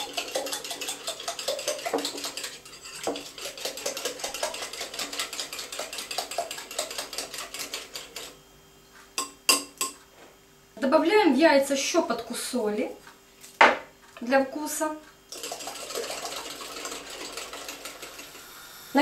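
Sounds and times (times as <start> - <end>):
whisk clicking against bowl: 0.0 - 8.3.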